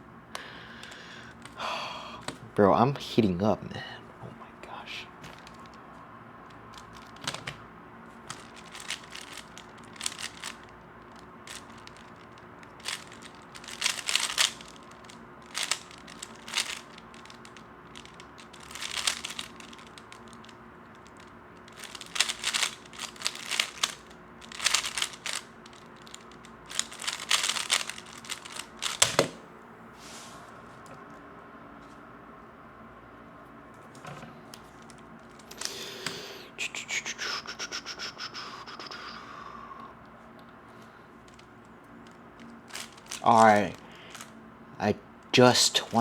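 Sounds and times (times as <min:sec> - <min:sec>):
faint steady hum: 0:00.0 - 0:46.0
plastic puzzle cube clicking: 0:08.3 - 0:10.7, 0:11.5 - 0:20.4, 0:21.7 - 0:29.4.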